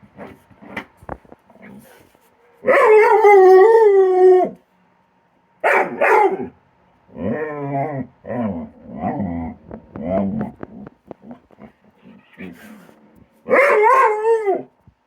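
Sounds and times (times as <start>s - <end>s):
dog howling: 2.6s - 4.6s, 13.5s - 14.8s
dog yipping: 5.6s - 6.5s, 13.5s - 14.3s.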